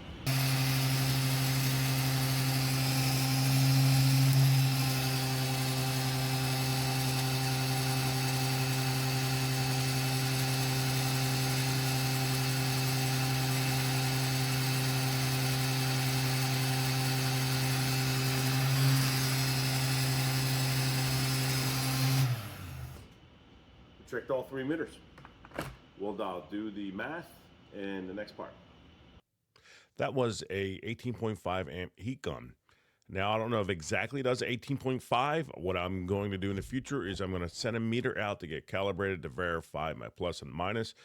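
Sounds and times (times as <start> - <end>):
heat gun fan humming: 0.2 - 23.1.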